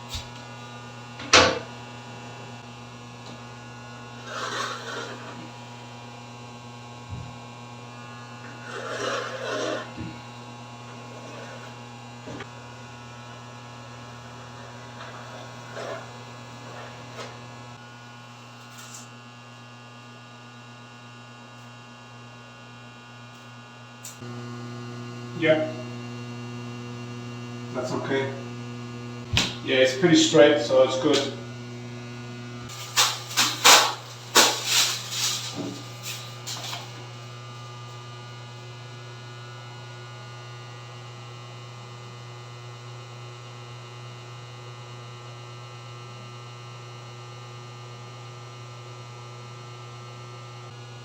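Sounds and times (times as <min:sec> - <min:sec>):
electrical mains hum: 0:00.0 - 0:51.0
rustling: 0:32.7 - 0:37.1.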